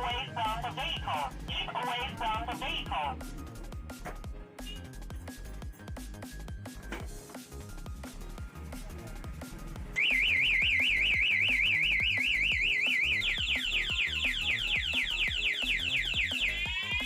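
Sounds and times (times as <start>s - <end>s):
background music: 0.0s - 17.0s
motorcycle alarm siren: 10.0s - 17.0s.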